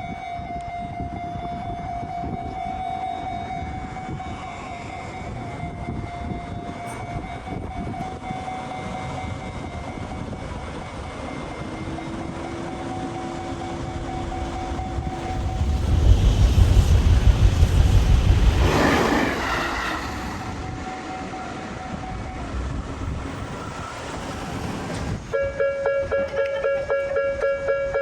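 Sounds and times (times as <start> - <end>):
lower alarm tone: 0.0 - 16.2
passing train rumble: 0.0 - 28.0
level crossing alarm ringing: 1.8 - 15.6, 25.4 - 28.0.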